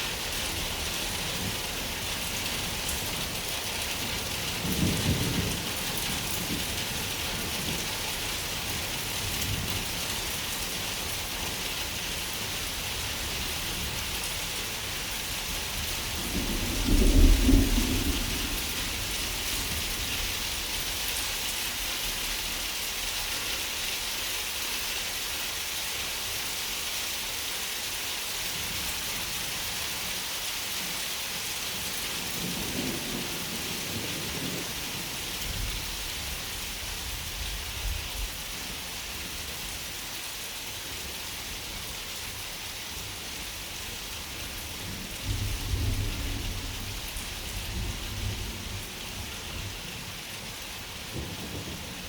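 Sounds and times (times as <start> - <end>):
rain hissing: 9.9 - 26.2
thunder rumbling: 15.7 - 20.9.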